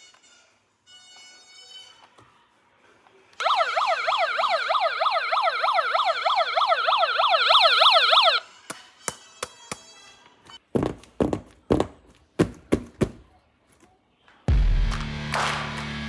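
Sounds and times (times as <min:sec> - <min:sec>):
electronic siren yelping: 0:03.4 - 0:08.4.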